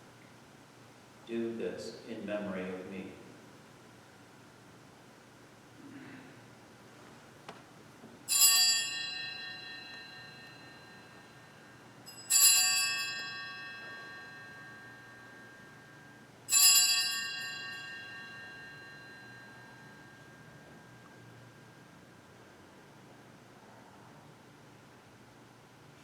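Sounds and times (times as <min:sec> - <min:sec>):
altar bell ringing: 0:08.3 - 0:22.8.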